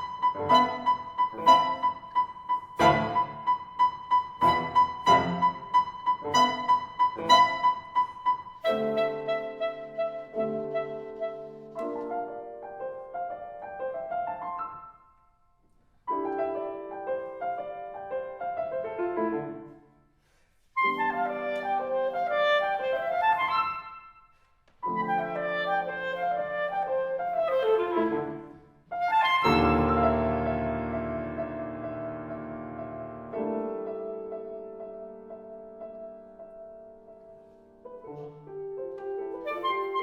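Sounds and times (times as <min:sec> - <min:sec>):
clarinet: 0:00.0 - 0:14.9, 0:20.8 - 0:31.6, 0:37.8 - 0:40.0
piano: 0:00.0 - 0:40.0.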